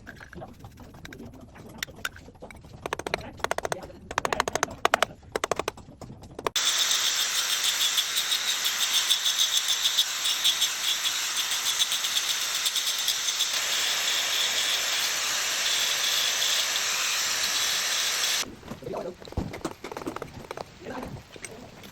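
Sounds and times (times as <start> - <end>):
knocks and scrapes: 0.0 - 6.6
power tool grinding stone: 2.8 - 5.7, 6.5 - 18.5.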